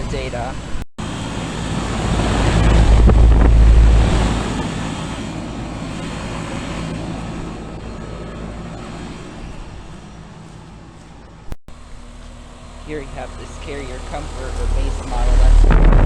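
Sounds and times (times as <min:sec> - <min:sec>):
fan air rushing: 0:00.0 - 0:16.0
low electrical hum: 0:00.0 - 0:16.0.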